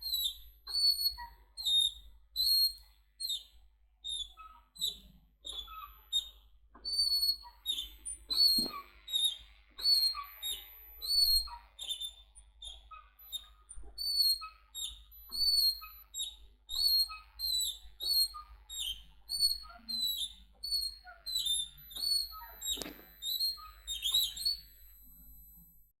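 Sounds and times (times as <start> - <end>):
seesaw creaking and squeaking: 4.2 - 25.5.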